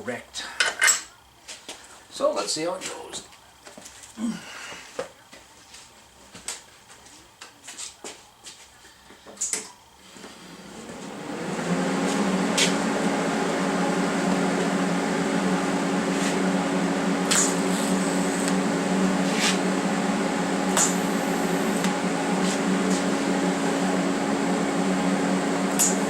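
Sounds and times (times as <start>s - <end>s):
welding arc buzz and hiss: 9.4s - 26.0s.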